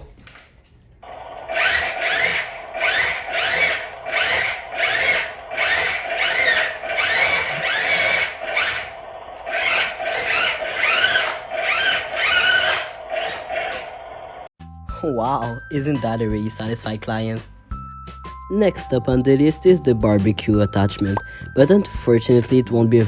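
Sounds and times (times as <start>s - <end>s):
rhythmic rasping strokes: 1.3s - 13.9s.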